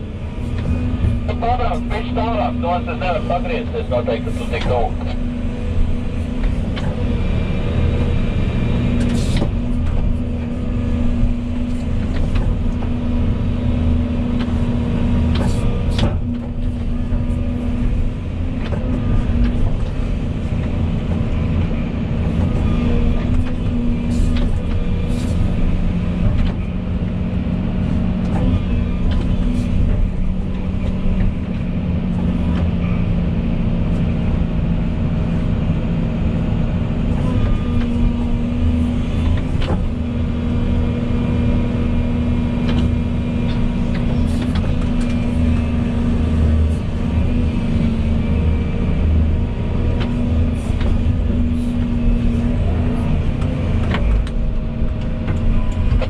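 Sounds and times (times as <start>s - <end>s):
excavator diesel engine running: 0.0s - 56.0s.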